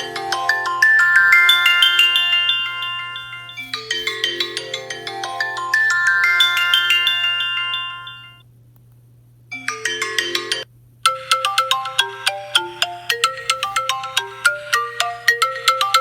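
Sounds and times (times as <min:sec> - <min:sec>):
phone ringtone melodies: 0:00.0 - 0:08.4, 0:09.5 - 0:16.0.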